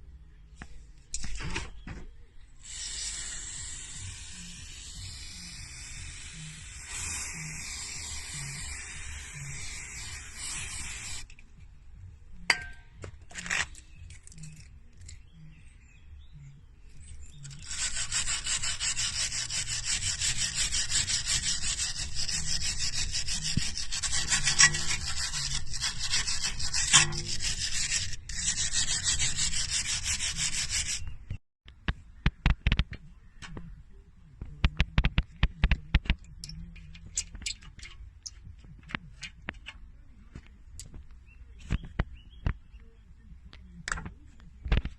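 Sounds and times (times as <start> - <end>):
stiff brush scrubbing metal: 2.7 - 11.3, 17.4 - 31.1.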